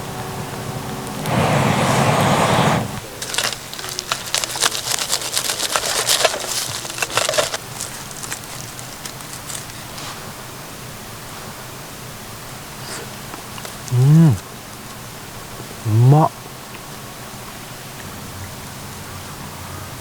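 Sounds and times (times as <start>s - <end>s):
wood fire crackling: 0.3s - 10.4s, 12.6s - 15.0s.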